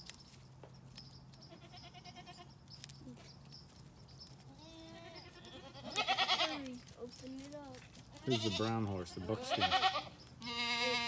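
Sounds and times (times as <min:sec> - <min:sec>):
goats bleating faintly: 0:08.2 - 0:11.0.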